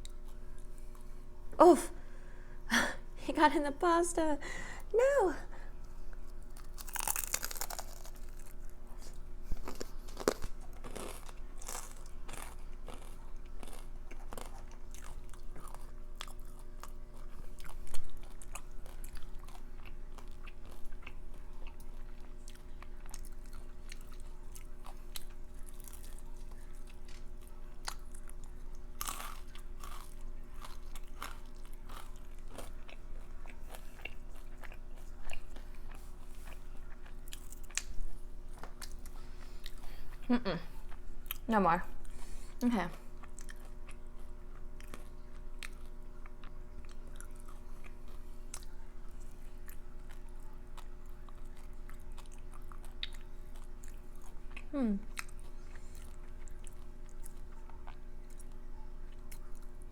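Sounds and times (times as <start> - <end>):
chewing with crisp crunches: 0.0 - 1.4, 5.7 - 59.9.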